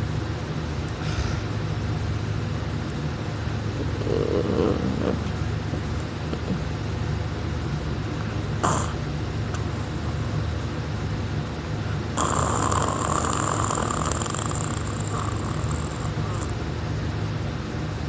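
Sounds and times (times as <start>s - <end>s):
person snoring: 3.8s - 5.3s, 8.6s - 9.0s, 12.2s - 16.6s.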